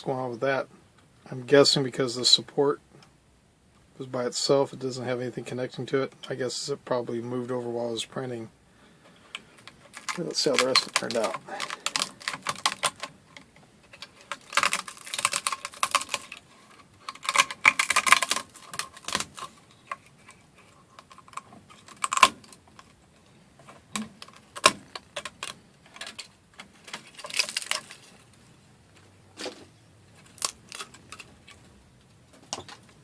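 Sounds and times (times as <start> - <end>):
plastic clicks and rattles: 9.3 - 23.0, 23.6 - 28.2.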